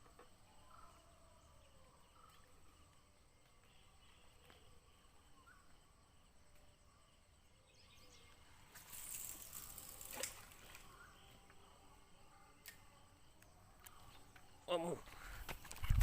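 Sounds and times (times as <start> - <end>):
small chirps: 8.3 - 11.7
rustling hiss: 8.5 - 11.1.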